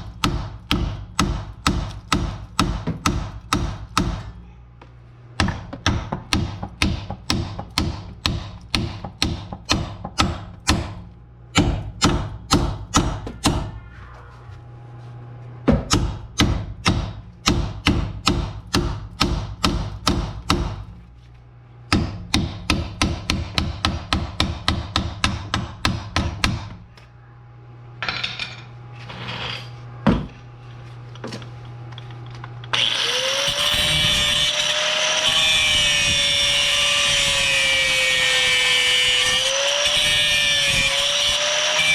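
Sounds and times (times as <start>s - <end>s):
steady low hum: 0.0s - 38.5s
grinder cutting with high whine: 32.7s - 41.9s.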